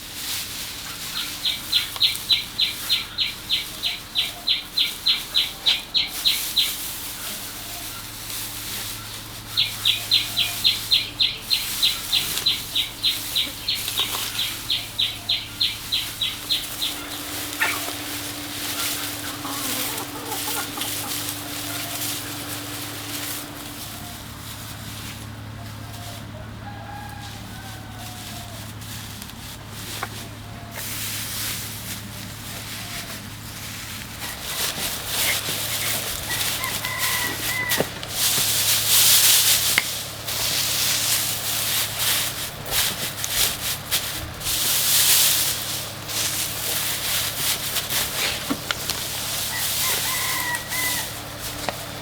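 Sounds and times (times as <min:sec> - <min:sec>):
rustling and scraping: 0:00.0 - 0:52.0
steady low hum: 0:00.0 - 0:52.0
rooster crowing: 0:09.0 - 0:24.3, 0:25.8 - 0:28.8, 0:34.2 - 0:38.6, 0:48.0 - 0:52.0.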